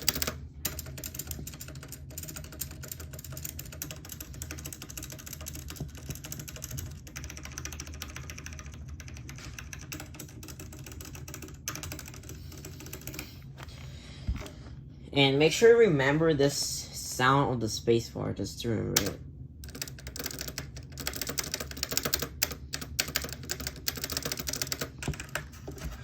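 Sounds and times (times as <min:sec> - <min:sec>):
fast typing on keyboard: 0:00.0 - 0:13.4, 0:19.0 - 0:26.0.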